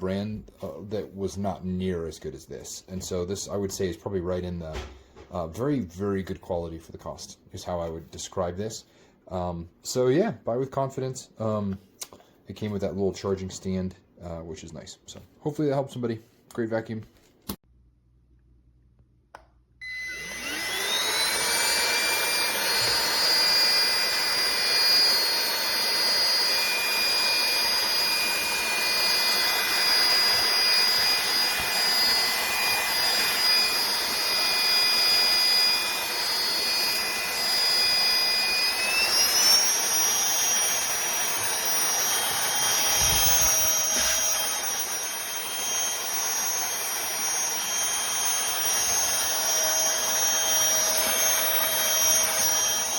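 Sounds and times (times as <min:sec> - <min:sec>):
handheld vacuum motor whine: 0:19.8 - 0:52.9.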